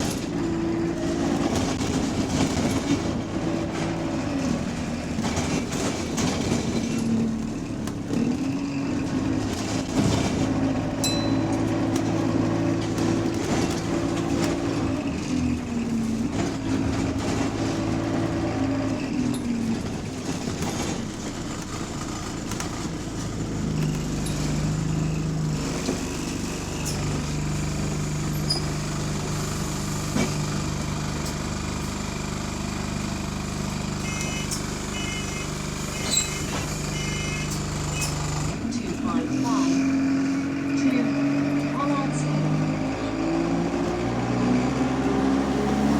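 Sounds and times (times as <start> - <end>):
bus diesel engine droning: 0.0 - 45.9.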